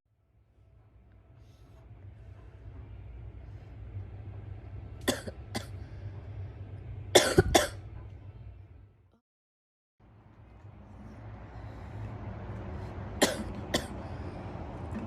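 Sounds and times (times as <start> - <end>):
girl coughing: 5.1 - 5.7, 7.2 - 7.8, 13.2 - 13.9.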